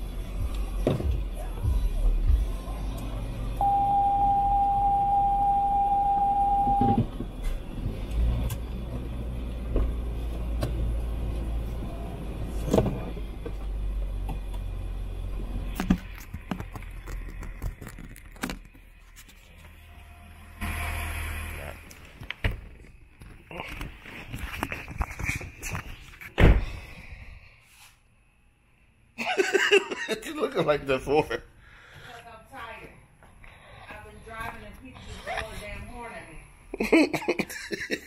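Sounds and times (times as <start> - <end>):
road and engine rumble: 0.0 - 25.8
steady pure beep tone: 3.6 - 7.1.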